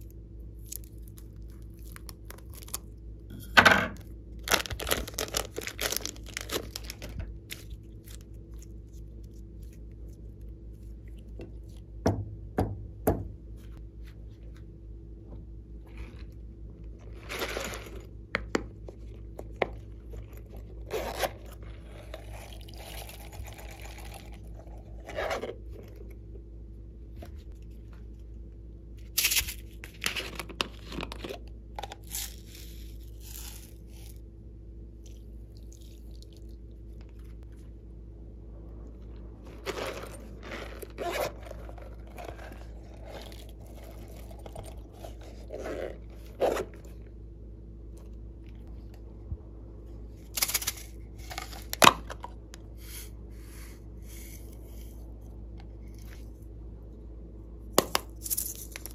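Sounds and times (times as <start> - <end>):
slime crackling and popping: 4.4 - 8.3.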